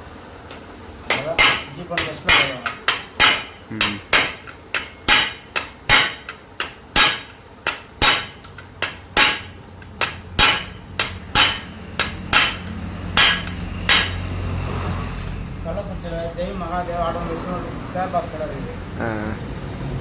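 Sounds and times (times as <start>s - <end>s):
hammer striking metal: 1.1s - 14.4s.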